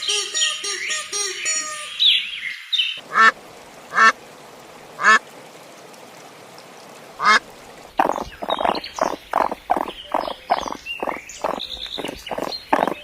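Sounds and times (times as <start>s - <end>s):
animal calling: 8.0s - 13.0s.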